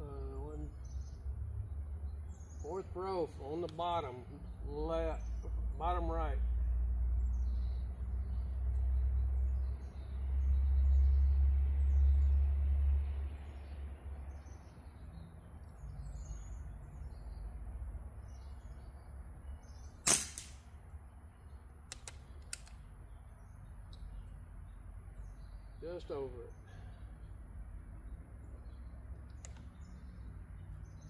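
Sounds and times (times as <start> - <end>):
airgun shot: 20.0 - 20.7.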